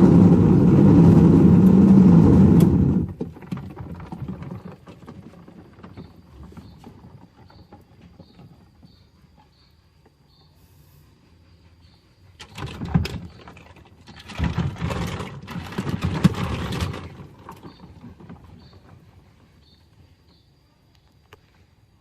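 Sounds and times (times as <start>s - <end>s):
plastic pieces rattling in drum: 12.4s - 18.6s.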